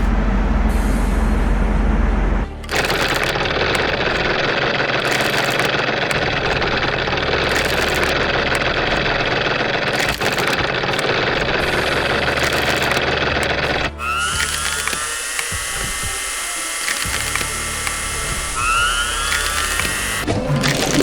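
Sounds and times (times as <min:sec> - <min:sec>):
engine running steadily: 0:00.0 - 0:21.0.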